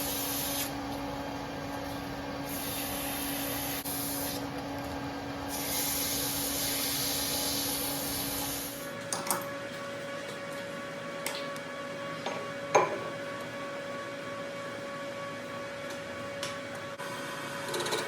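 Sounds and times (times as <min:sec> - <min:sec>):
lathe cutting hiss: 0:00.0 - 0:00.8, 0:02.4 - 0:04.5, 0:05.5 - 0:08.9.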